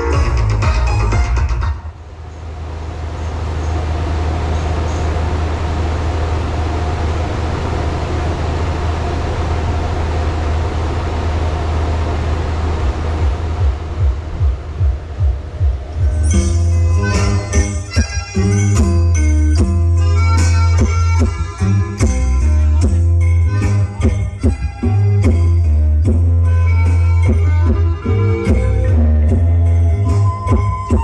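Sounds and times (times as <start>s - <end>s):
music track: 0.0s - 2.0s, 13.2s - 31.0s
throbbing bass beat: 0.0s - 2.0s, 11.2s - 31.0s
deep bass drone: 0.0s - 31.0s.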